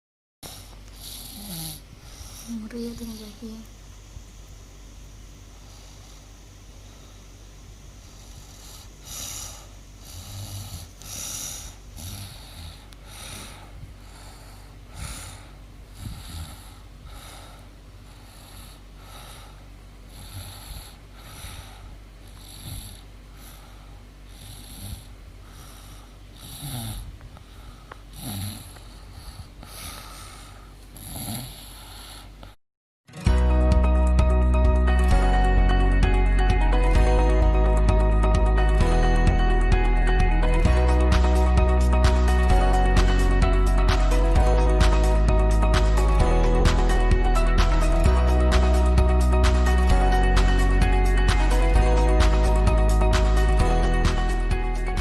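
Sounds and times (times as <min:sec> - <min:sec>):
woman snoring: 0:00.4 - 0:03.6, 0:08.1 - 0:27.1, 0:28.1 - 0:32.6
steady low hum: 0:00.4 - 0:32.6, 0:33.2 - 0:55.0.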